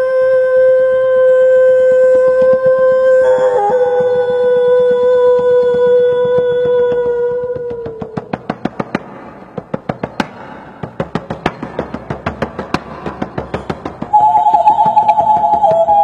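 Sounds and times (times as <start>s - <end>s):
dry percussive knocking: 5.2s - 16.0s
sustained musical tone: 14.1s - 16.0s.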